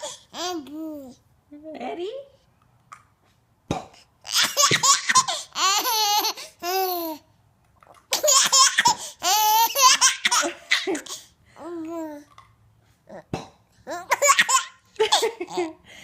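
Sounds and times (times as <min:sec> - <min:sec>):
baby laughing: 0:04.2 - 0:07.2, 0:08.1 - 0:11.3, 0:13.9 - 0:15.8.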